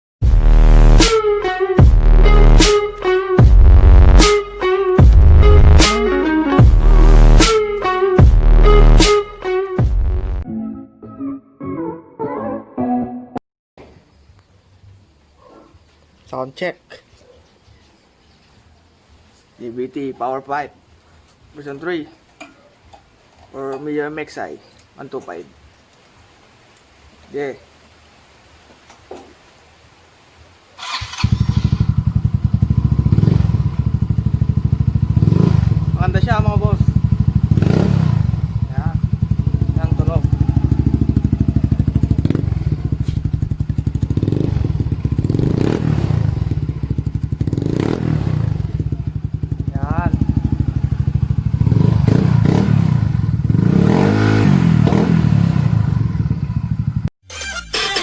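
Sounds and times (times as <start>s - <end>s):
scooter engine starting: 30.8s - 35.0s, 57.3s - 58.0s
scooter engine running: 30.8s - 36.0s, 36.9s - 54.0s.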